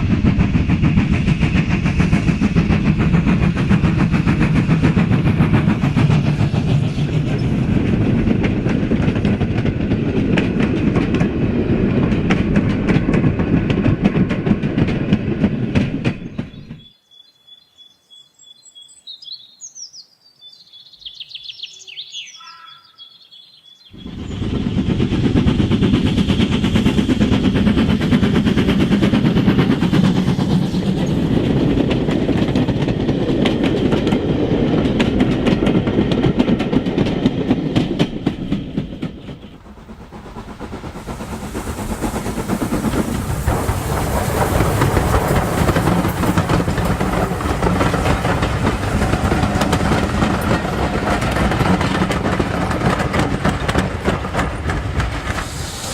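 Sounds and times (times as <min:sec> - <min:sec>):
model train running on track: 0:00.0 - 0:16.9, 0:23.9 - 0:55.9
wheels clicking over rail joints: 0:00.0 - 0:16.9, 0:24.0 - 0:55.9
high bird-like chirps: 0:16.3 - 0:24.1.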